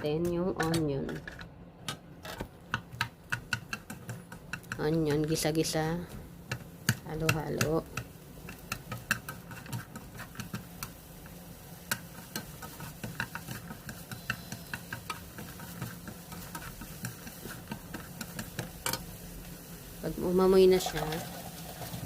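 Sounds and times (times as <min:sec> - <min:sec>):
spatula scraping a wok: 0:07.6 - 0:20.0.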